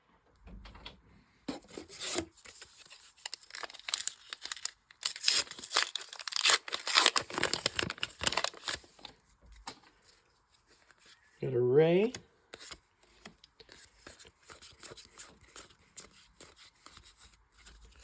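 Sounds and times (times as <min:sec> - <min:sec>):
wrapper tearing and crinkling: 0:01.9 - 0:09.1.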